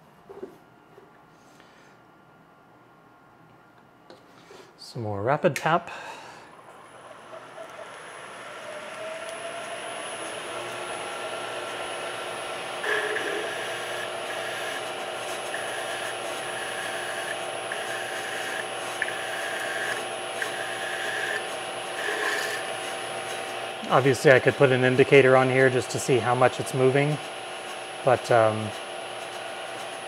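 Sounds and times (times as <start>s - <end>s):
milling machine spindle running: 6.6s - 30.0s
drill bit cutting into metal: 9.2s - 30.0s.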